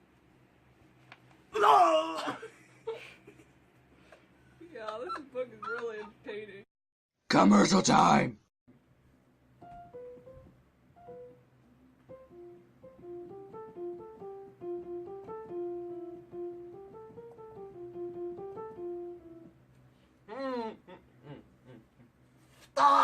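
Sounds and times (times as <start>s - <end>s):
quiet instrumental melody: 9.6s - 19.6s.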